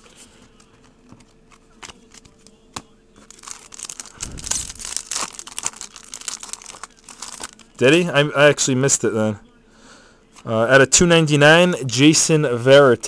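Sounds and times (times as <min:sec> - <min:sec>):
foil wrapper crinkling and tearing: 0:03.2 - 0:07.9.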